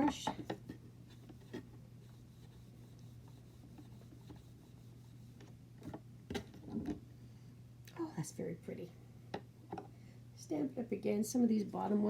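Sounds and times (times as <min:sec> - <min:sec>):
low steady hum: 0:00.0 - 0:12.0
brush rubbing on paper: 0:01.1 - 0:05.4.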